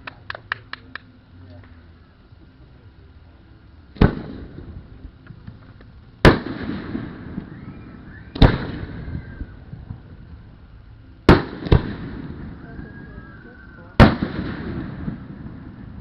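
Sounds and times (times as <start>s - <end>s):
fireworks shells booming: 3.9s - 4.9s, 6.2s - 10.2s, 11.2s - 16.0s.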